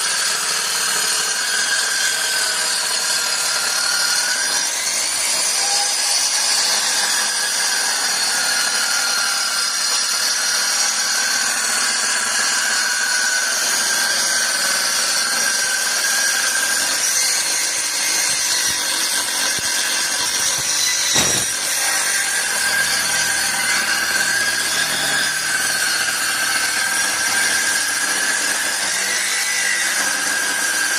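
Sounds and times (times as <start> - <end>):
power tool whining on wood: 0.0 - 30.9
sharp knock: 20.5 - 21.8.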